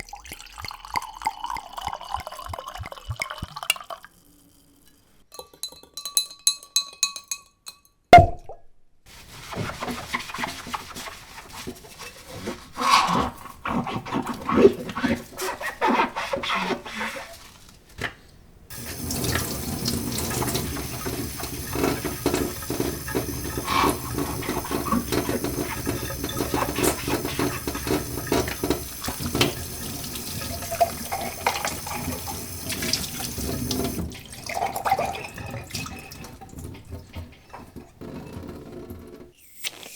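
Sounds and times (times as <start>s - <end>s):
liquid pouring and splashing: 0.0s - 6.1s, 18.7s - 39.9s.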